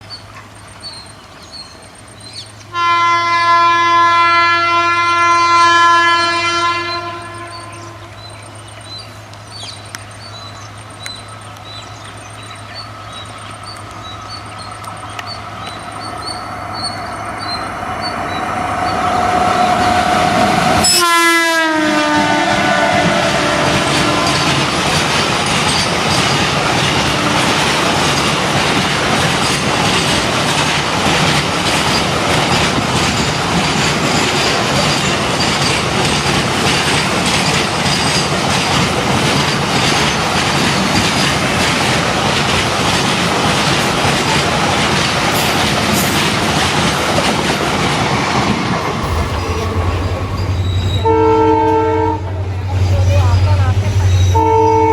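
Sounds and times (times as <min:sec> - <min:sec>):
train approaching: 0:00.0 - 0:54.9
locomotive horn blast: 0:02.7 - 0:08.2, 0:19.1 - 0:24.8, 0:27.0 - 0:27.7, 0:49.0 - 0:54.9
freight wagons rumbling and clacking: 0:23.8 - 0:54.5.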